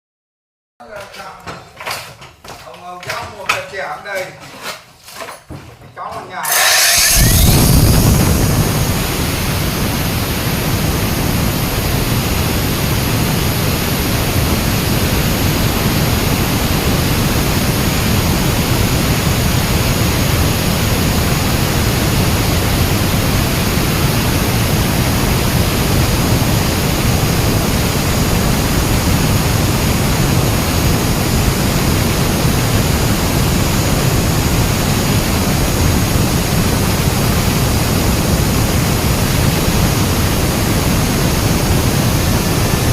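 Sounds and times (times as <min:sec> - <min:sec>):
concrete cutting saw grinding: 0:06.3 - 0:08.8.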